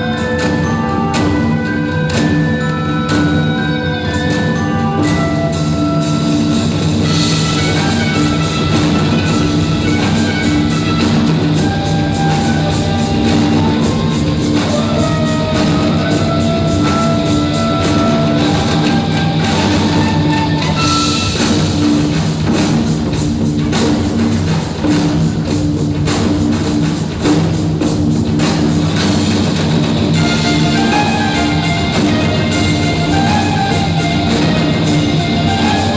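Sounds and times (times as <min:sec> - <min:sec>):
drum kit rapid hits: 0:04.4 - 0:35.9.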